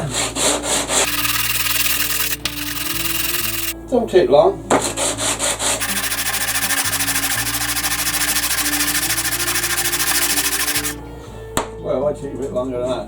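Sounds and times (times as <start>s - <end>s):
sandpaper rasping on metal: 1.0s - 3.8s, 5.2s - 11.0s.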